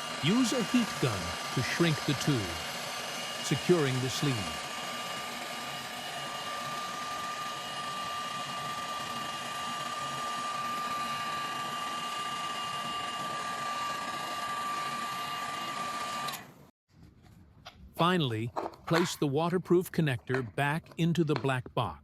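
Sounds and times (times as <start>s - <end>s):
heat gun blowing air: 0.0s - 16.4s
fan motor whine: 0.0s - 16.7s.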